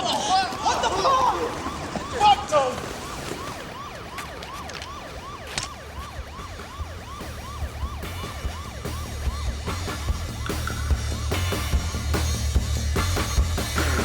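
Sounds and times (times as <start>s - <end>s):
siren in a fast yelp: 0.1s - 10.0s.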